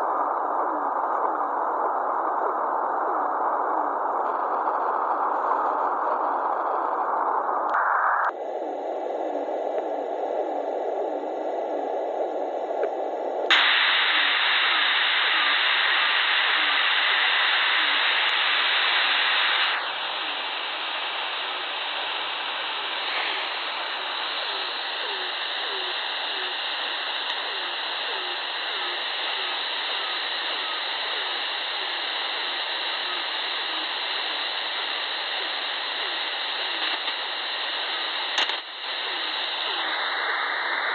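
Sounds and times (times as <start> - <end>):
radio receiver hiss and static: 0.0 - 40.9.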